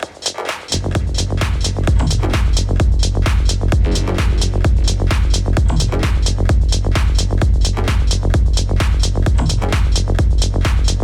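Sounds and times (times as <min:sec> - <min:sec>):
techno music: 0:00.0 - 0:11.0.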